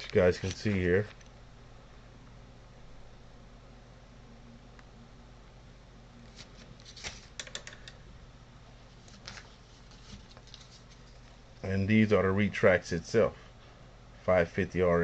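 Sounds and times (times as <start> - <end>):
small parts clicking and rustling: 0.0 - 1.4, 6.8 - 8.0.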